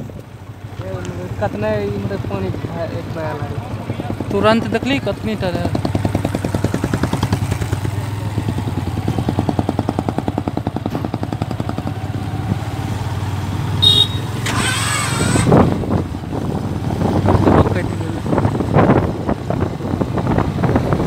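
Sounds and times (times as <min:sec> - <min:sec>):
small engine putter: 0:13.9 - 0:15.7.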